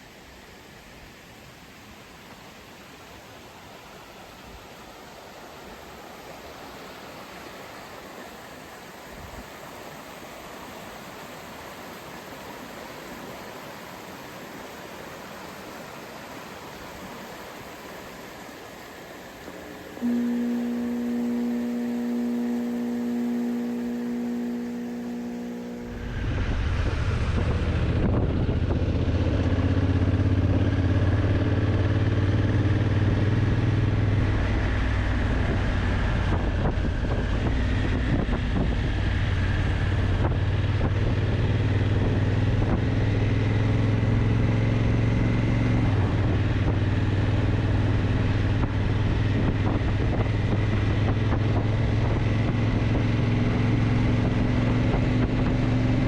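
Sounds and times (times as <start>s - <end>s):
motorcycle engine at road speed: 20.0s - 56.0s
wind rushing over microphone: 25.4s - 56.0s.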